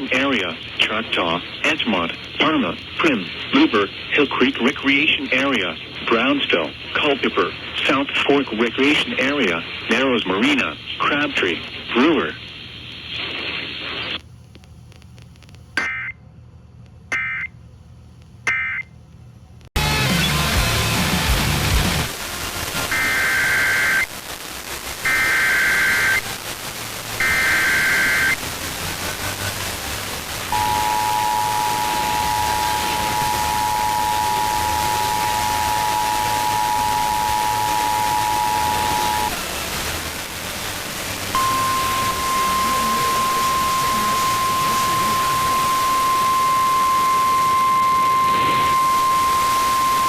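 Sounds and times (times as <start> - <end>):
radio hiss: 0.0 - 16.0, 20.2 - 50.0
steady warning alarm tone: 17.1 - 17.5, 18.5 - 18.9, 22.9 - 24.0, 25.1 - 26.2, 27.2 - 28.4, 30.5 - 39.4, 41.3 - 50.0
two-tone attention signal: 30.5 - 39.3, 41.4 - 50.0
warbling digital header tones: 30.6 - 39.3, 41.4 - 50.0.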